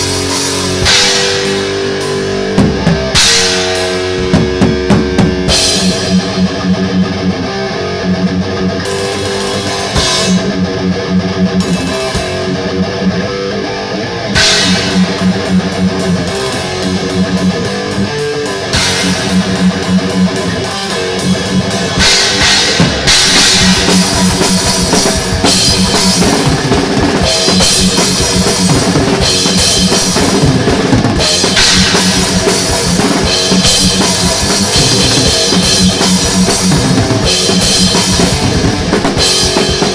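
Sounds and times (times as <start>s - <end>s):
cymbals crashing: 0.0s - 4.3s, 9.0s - 10.6s, 14.4s - 16.7s, 18.7s - 20.8s, 22.0s - 26.5s, 31.2s - 38.4s
fast drum kit: 0.0s - 7.3s, 8.9s - 12.8s, 14.3s - 39.9s
distorted electric guitars riffing: 0.0s - 39.9s
thrash metal band: 0.0s - 39.9s.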